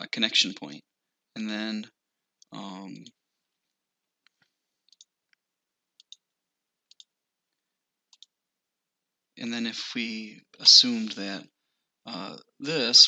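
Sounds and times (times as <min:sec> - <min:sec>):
computer mouse clicks: 0:04.2 - 0:05.4, 0:06.0 - 0:06.3, 0:06.9 - 0:07.1, 0:08.1 - 0:08.4.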